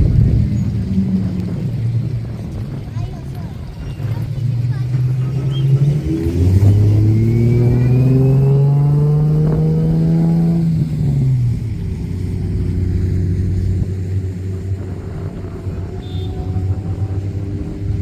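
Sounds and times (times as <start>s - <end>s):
car engine revving hard: 4.0s - 18.0s.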